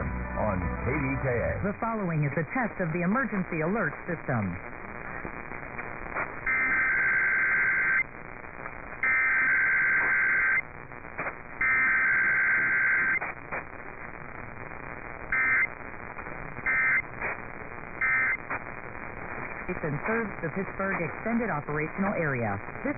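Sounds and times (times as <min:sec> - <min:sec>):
broadcast hiss: 0:00.0 - 0:22.9
shrill buzzy data chirps: 0:06.4 - 0:08.1, 0:09.0 - 0:10.7, 0:11.6 - 0:13.2, 0:15.3 - 0:15.7, 0:16.6 - 0:17.1, 0:18.0 - 0:18.4.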